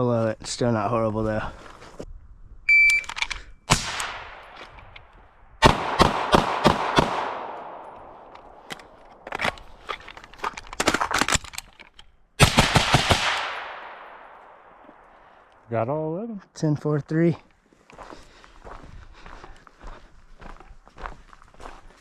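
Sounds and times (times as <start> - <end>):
rapid gunshots with echo: 5.6 - 7.9, 12.4 - 14.7.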